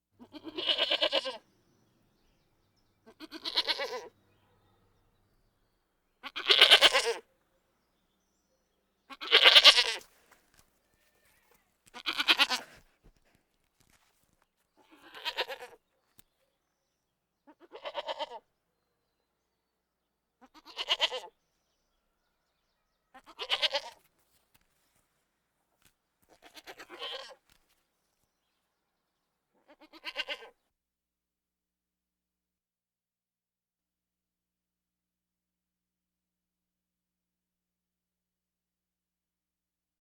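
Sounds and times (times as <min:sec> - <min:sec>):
goat bleating: 0:00.2 - 0:01.4, 0:03.0 - 0:04.2, 0:06.2 - 0:07.3, 0:09.1 - 0:10.1, 0:11.0 - 0:12.8, 0:14.8 - 0:15.8, 0:17.5 - 0:18.4, 0:20.4 - 0:21.3, 0:23.2 - 0:24.1, 0:26.3 - 0:27.4, 0:29.6 - 0:30.6.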